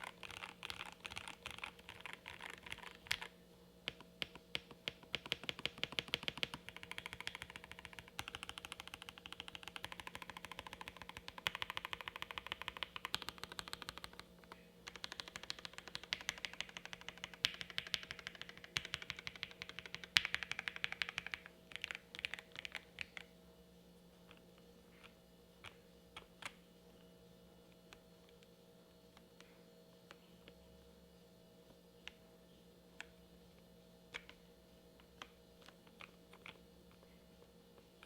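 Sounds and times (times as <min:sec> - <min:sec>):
fast typing on mechanical keyboard: 0:00.0 - 0:03.3, 0:04.2 - 0:14.2, 0:14.8 - 0:23.2.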